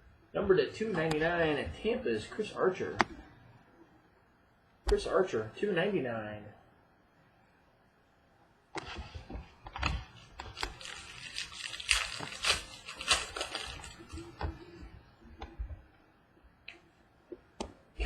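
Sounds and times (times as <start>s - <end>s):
cards and packaging rustling: 8.8s - 14.8s.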